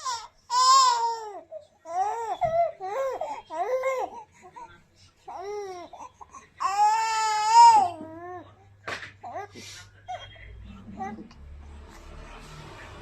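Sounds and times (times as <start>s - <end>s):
baby crying: 0.0s - 4.3s, 5.3s - 8.5s.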